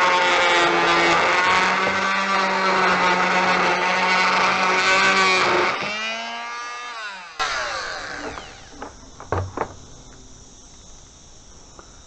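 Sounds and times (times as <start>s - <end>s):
power tool whine winding down: 0.0s - 10.1s
light knocks: 8.2s - 10.2s.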